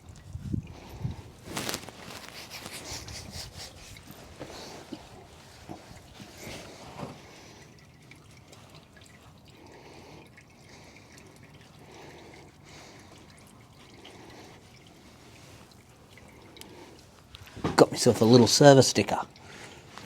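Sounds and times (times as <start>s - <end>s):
oil dripping into pan: 4.0s - 17.6s.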